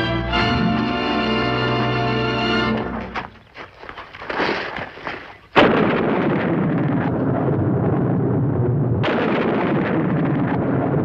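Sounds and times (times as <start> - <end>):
thunderclap: 5.6 - 11.0.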